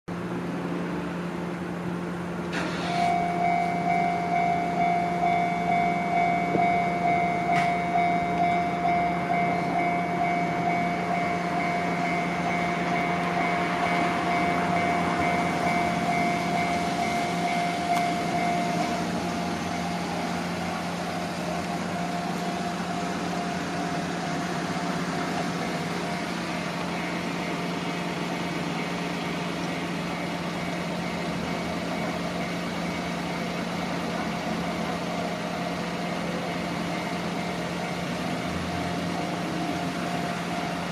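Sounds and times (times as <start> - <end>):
engine hum: 0.1 - 40.9
passing train rushing: 0.1 - 40.9
level-crossing warning bell dinging: 2.9 - 40.9.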